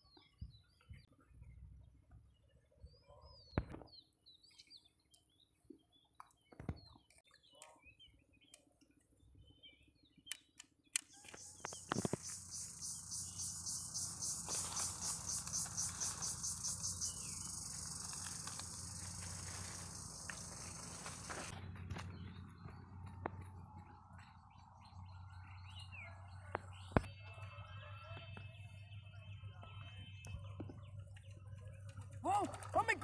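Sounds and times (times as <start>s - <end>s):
bird chirps: 9.3s - 23.5s, 24.1s - 32.2s
high-pitched pulsing insect buzz: 11.4s - 21.5s.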